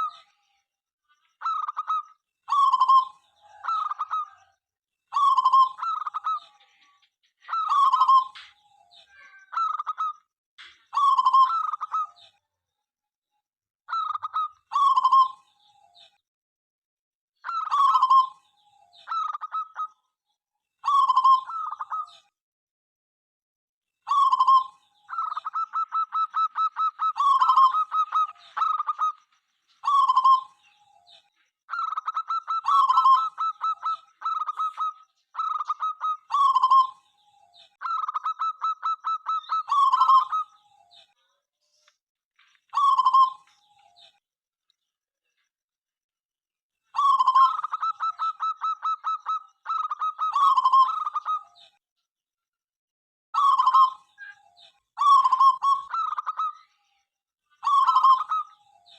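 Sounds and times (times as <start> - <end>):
dove cooing: 5.1 - 6.5, 24.1 - 29.2, 29.8 - 30.7, 31.7 - 37.0, 37.8 - 40.5, 47.0 - 51.5, 55.0 - 56.5, 57.6 - 58.5.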